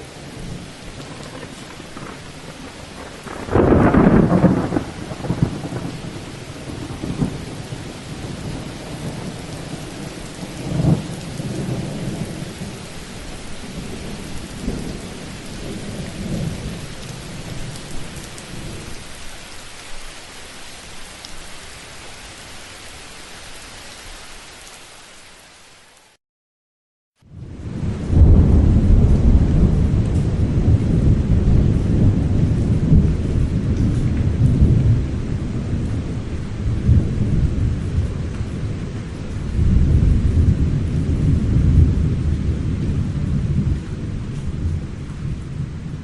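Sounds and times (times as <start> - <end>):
thunderclap: 0.0 - 12.8, 27.4 - 46.0
rolling thunder rumbles: 0.0 - 19.1, 27.3 - 46.0
steady rain: 0.0 - 26.2, 27.2 - 46.0.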